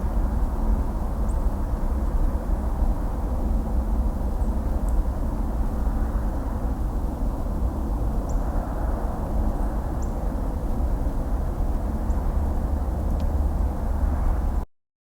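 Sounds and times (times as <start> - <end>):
distant highway traffic rumble: 0.0 - 14.7.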